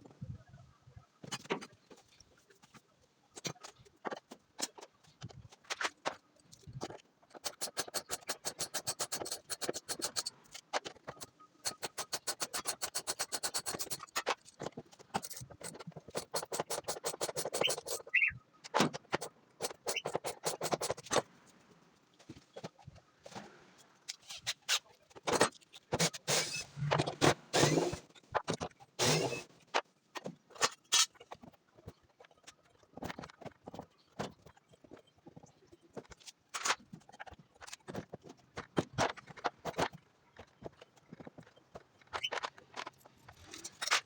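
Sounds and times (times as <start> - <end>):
rapid mechanical clicking: 7.4 - 10.4, 11.6 - 14.3.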